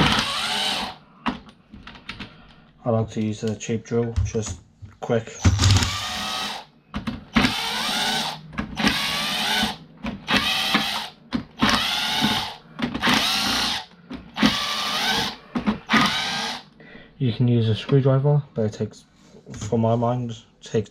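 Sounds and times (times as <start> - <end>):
power drill whining: 0.0 - 1.0, 5.6 - 6.7, 7.4 - 16.7.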